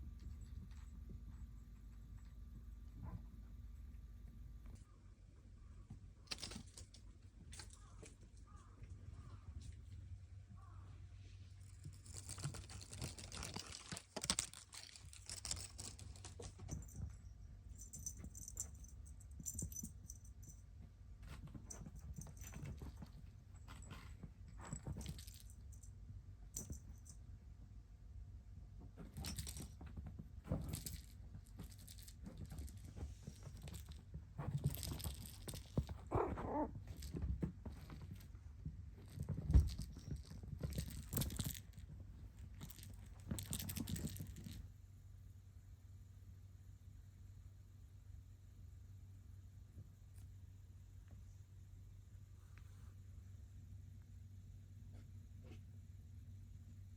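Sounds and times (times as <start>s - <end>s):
light clicks and rustles: 5.8s - 10.8s, 28.8s - 44.7s
kitten purring: 36.0s - 37.1s.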